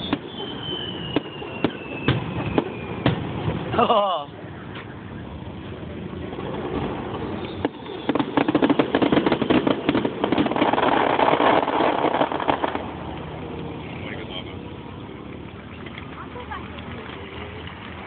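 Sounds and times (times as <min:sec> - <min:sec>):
firework bang: 0:00.0 - 0:03.9, 0:06.3 - 0:13.1
fireworks crackling: 0:00.0 - 0:18.0.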